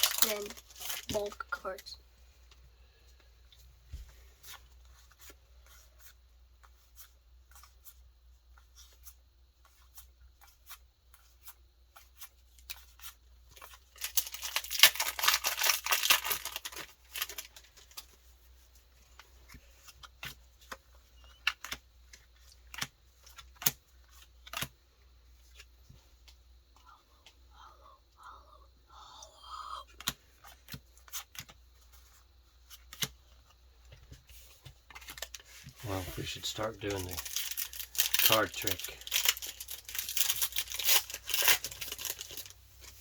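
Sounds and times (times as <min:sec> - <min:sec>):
foil wrapper crinkling and tearing: 0:00.0 - 0:01.5, 0:12.6 - 0:18.1, 0:34.9 - 0:43.0
trading cards clicking and rustling: 0:19.1 - 0:24.8, 0:34.6 - 0:42.5.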